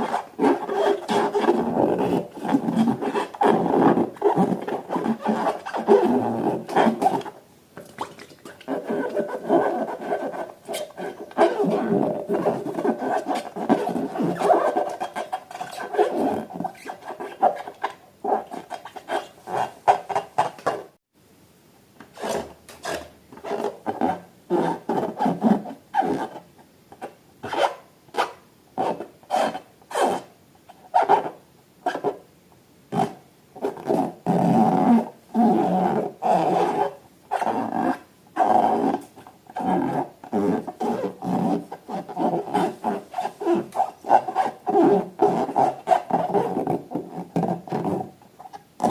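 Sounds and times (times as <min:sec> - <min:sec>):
hands squeaking balloons: 0:00.0 - 0:07.3, 0:08.2 - 0:20.8, 0:39.6 - 0:48.9.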